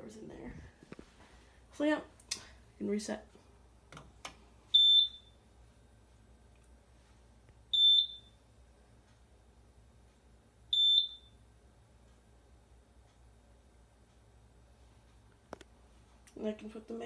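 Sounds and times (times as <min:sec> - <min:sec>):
short high alarm beeps: 0:04.8 - 0:05.4, 0:07.7 - 0:08.4, 0:10.8 - 0:11.4.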